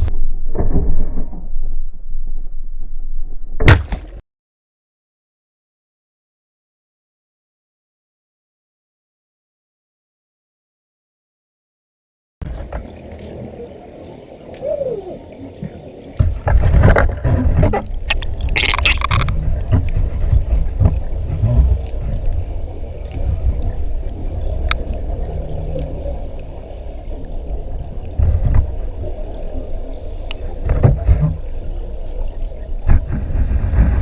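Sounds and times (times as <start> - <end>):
muffled underwater rumble: 0.0 - 3.7, 12.4 - 34.0
splashing and bubbling: 15.0 - 34.0.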